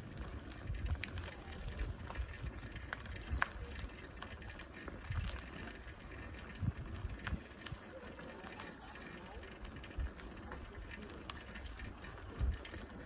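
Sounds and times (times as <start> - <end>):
wind on microphone: 0.0 - 7.8
bicycle tyres crunching on dirt: 0.0 - 13.0
bike clicks and rattles: 0.0 - 13.0.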